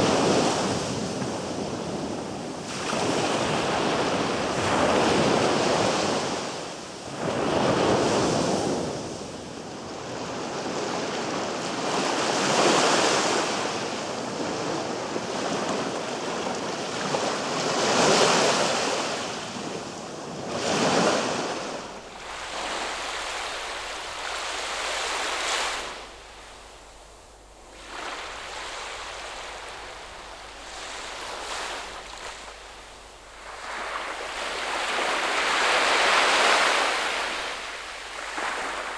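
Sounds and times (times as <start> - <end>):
waves washing in: 17.2 - 38.9.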